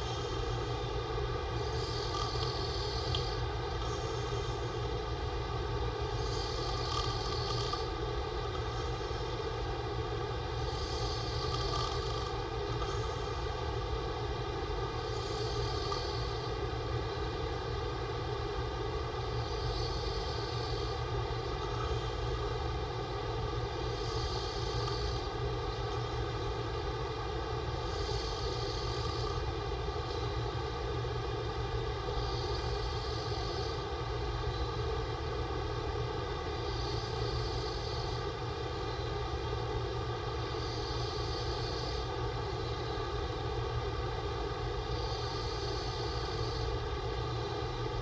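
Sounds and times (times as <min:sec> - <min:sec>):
man snoring: 0:00.0 - 0:00.7, 0:01.6 - 0:05.0, 0:06.1 - 0:09.4, 0:10.6 - 0:13.7, 0:15.0 - 0:16.5, 0:21.5 - 0:22.7, 0:23.8 - 0:26.6, 0:27.8 - 0:29.5
droning hum: 0:00.0 - 0:48.0.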